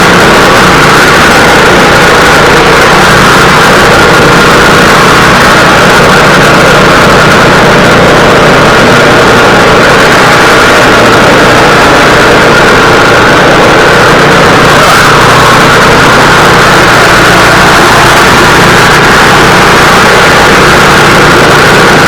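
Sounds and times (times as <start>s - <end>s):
snow thrower engine running: 0.0s - 22.0s.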